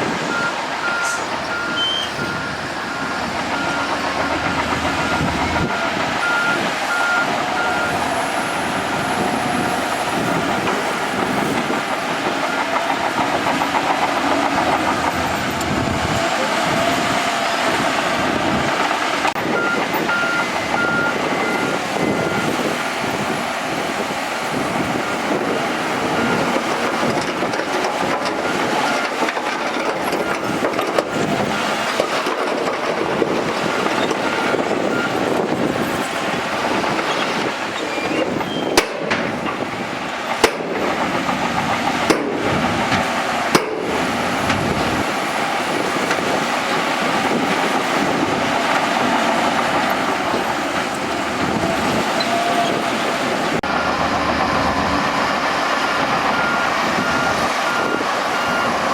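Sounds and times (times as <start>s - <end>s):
bulldozer engine running: 0.0s - 58.9s
steel tracks clattering: 0.0s - 58.9s
sharp knocks: 38.8s - 39.6s, 40.4s - 44.6s.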